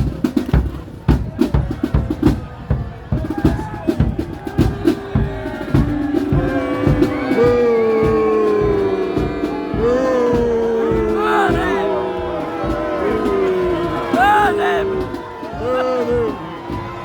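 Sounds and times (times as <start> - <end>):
marching band drums: 0.0 - 17.0
band holding melody notes: 4.4 - 17.0.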